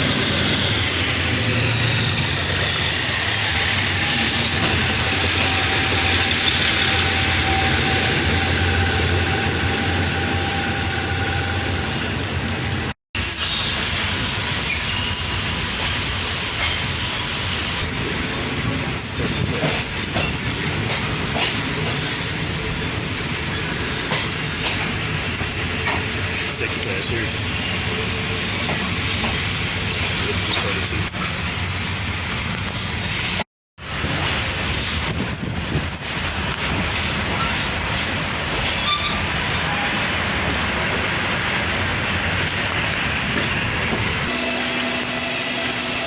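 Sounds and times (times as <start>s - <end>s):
train wheels clacking: 0.0s - 11.6s, 17.8s - 27.4s
train rumble and hiss: 0.0s - 46.0s.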